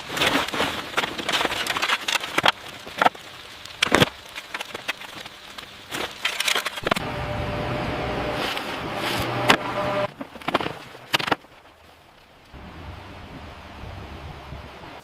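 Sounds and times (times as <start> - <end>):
sharp cracks and knocks: 0.0 - 7.1, 8.5 - 12.6
steady pitched hum: 6.8 - 10.2.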